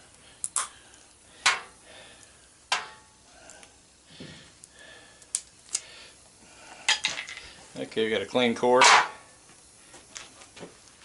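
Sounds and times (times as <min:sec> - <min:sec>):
hand tools clicking and snapping: 0:00.4 - 0:01.8, 0:02.7 - 0:03.7, 0:05.2 - 0:05.9.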